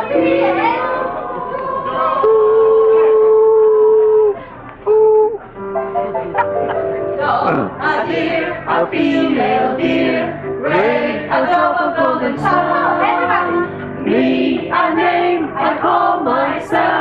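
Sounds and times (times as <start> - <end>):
song with singing voices: 7.2 - 17.0.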